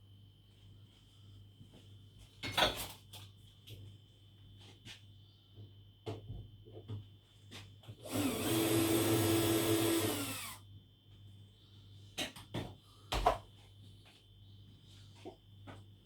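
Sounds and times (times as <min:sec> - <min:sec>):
power drill running: 0:08.0 - 0:10.6.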